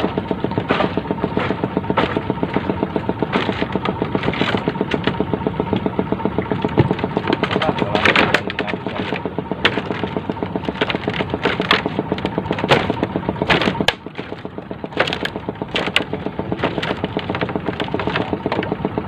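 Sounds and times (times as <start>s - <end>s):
sharp knocks and clicks: 0.0s - 19.0s
small engine running: 0.0s - 19.0s.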